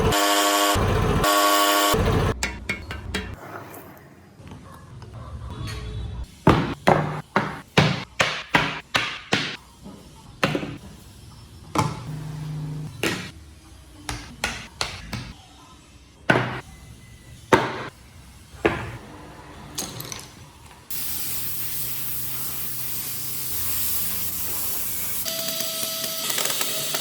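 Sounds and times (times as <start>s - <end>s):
steady spray hiss: 20.9s - 25.2s.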